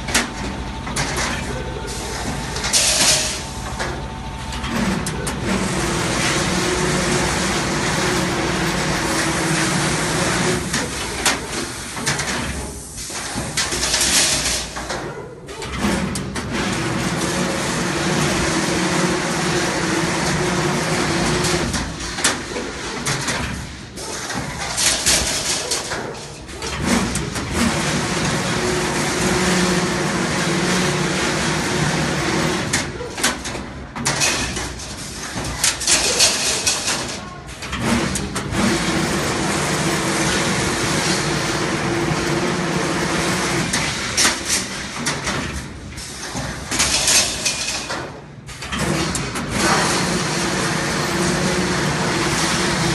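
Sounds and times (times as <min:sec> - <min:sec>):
steady motor hum: 0:00.0 - 0:13.6, 0:15.2 - 0:25.2, 0:25.8 - 0:34.0, 0:37.3 - 0:44.5, 0:48.4 - 0:52.9
metallic clanks and clatter: 0:21.2 - 0:27.8, 0:32.7 - 0:38.7.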